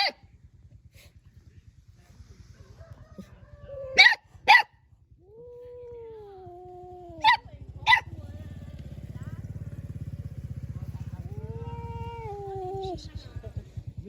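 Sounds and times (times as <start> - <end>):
dog barking: 0.0 - 0.2, 4.0 - 4.8, 7.2 - 8.2
low pulsing rumble: 0.0 - 14.0.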